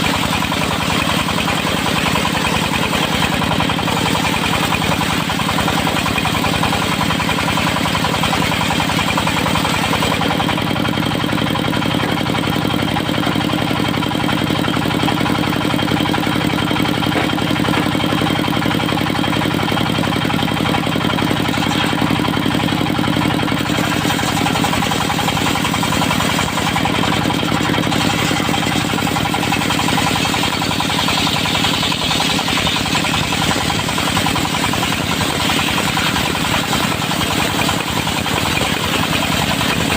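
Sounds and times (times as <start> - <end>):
sawmill diesel engine running: 0.0 - 39.9.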